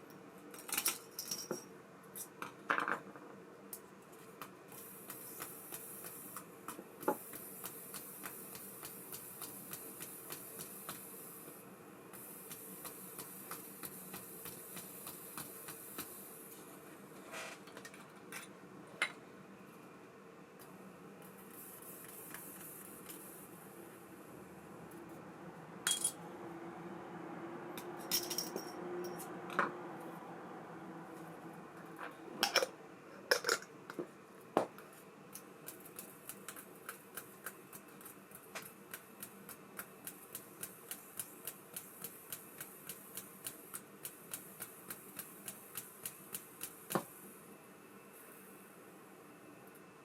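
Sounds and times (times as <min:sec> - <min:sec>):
light reel ticks: 0:38.9 - 0:46.9.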